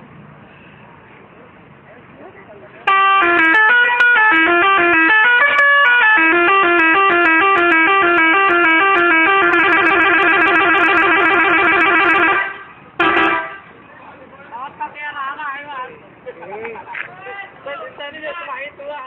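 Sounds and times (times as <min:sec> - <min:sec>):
musical bus horn playing tune: 0:02.9 - 0:13.7.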